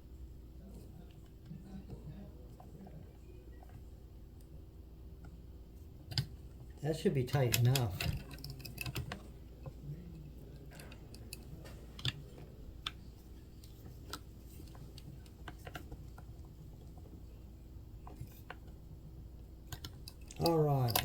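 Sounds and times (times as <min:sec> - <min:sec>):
faint low hum: 0:00.0 - 0:21.0
small tools clicking and tapping: 0:07.3 - 0:09.8, 0:10.5 - 0:13.0, 0:19.7 - 0:21.0.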